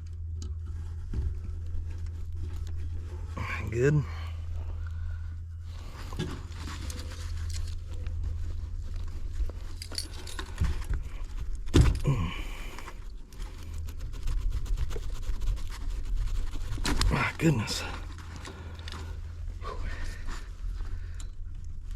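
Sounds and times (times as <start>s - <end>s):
low steady hum: 0.0s - 21.9s
metal parts clicking and jangling: 6.5s - 8.2s, 9.0s - 11.0s
person grunting: 12.0s - 12.8s.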